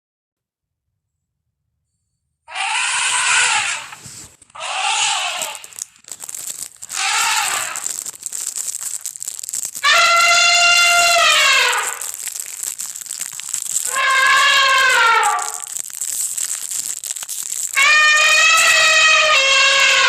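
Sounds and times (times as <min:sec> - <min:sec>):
elephant trumpeting: 0:02.5 - 0:05.8, 0:06.9 - 0:07.9, 0:09.8 - 0:12.1, 0:13.9 - 0:15.7, 0:17.7 - 0:20.0.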